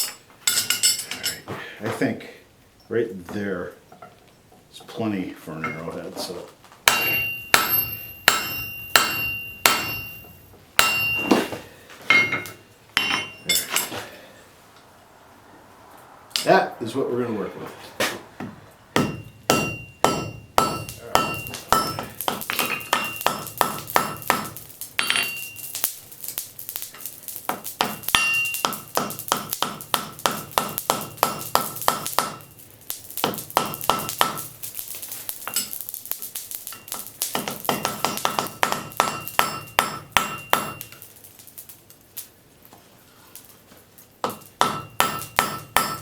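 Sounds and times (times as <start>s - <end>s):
hammer striking steel on anvil: 0.0s - 1.4s, 6.8s - 13.9s, 18.4s - 25.8s, 27.5s - 32.5s, 33.2s - 34.5s, 35.4s - 35.8s, 36.7s - 41.1s, 44.2s - 46.0s
anvil ringing: 6.9s - 13.9s, 18.9s - 25.8s, 27.8s - 32.6s, 36.7s - 41.0s, 44.2s - 46.0s.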